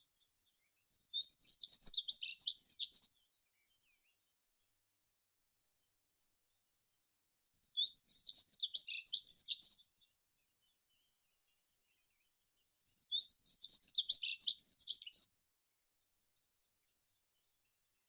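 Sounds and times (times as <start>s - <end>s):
songbird singing: 0.0s - 4.2s, 7.3s - 10.2s, 11.8s - 15.4s.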